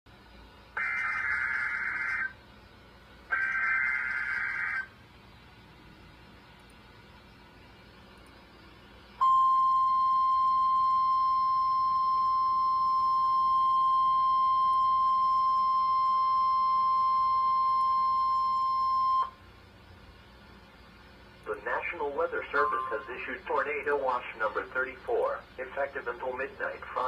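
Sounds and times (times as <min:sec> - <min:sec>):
high alarm tone: 0:03.3 - 0:04.9, 0:09.2 - 0:19.4, 0:21.6 - 0:23.9
faint radio hiss: 0:19.4 - 0:27.0.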